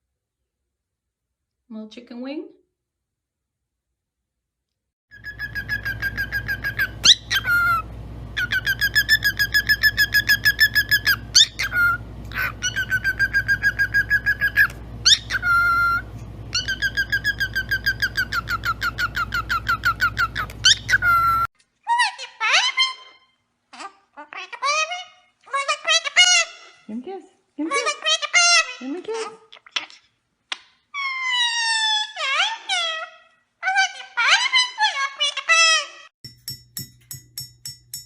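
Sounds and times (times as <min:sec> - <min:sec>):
parrot whistling trills: 0:05.1 - 0:21.5.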